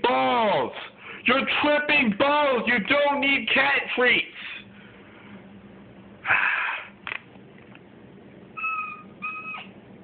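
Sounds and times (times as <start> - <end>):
cat hissing: 6.2 - 7.0
cat calling: 8.5 - 9.8.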